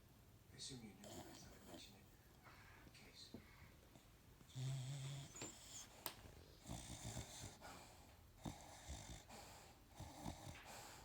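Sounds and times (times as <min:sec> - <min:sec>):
faint snoring: 0:04.5 - 0:05.9, 0:06.6 - 0:11.0.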